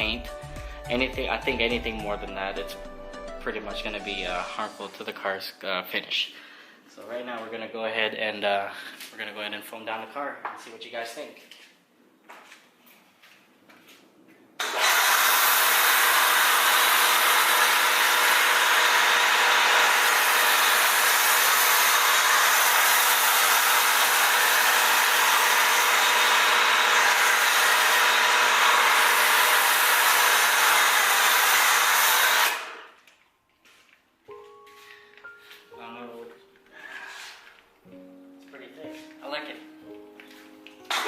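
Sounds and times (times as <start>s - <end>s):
pressure washer motor humming: 14.6s - 32.8s.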